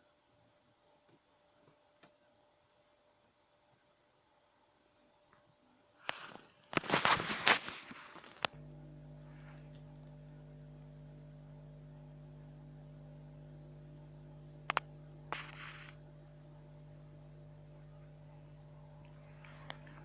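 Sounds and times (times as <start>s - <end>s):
low electrical hum: 0.0s - 20.0s
brief rustle: 6.0s - 8.5s.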